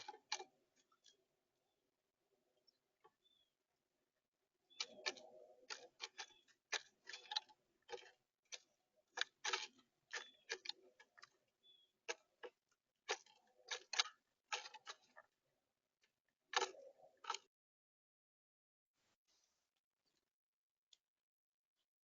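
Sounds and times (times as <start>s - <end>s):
faint short bird chirp: 2.7s - 3.5s
bird beak tapping on seeds: 4.7s - 15.0s.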